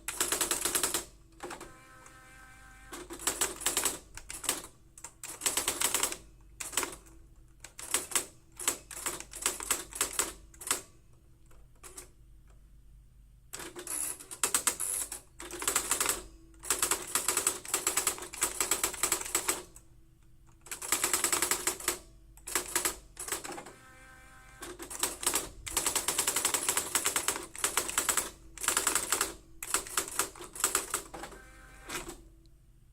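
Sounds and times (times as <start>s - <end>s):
typewriter rapid strikes: 0.0s - 1.1s, 3.0s - 4.6s, 5.2s - 7.0s, 7.8s - 10.8s, 13.6s - 19.6s, 20.6s - 23.5s, 24.8s - 31.1s.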